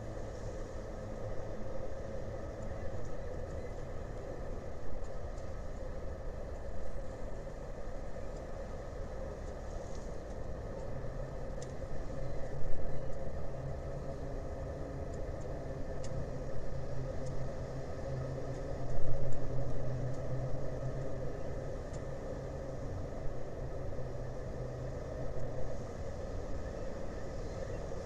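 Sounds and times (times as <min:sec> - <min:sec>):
faint clicks: 0:15.1 - 0:16.2.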